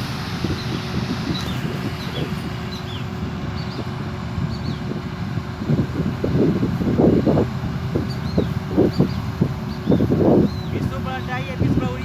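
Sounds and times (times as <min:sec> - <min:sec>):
combine harvester running: 0:00.0 - 0:12.0
small birds chirping: 0:00.5 - 0:03.9, 0:04.5 - 0:04.9, 0:08.0 - 0:11.8.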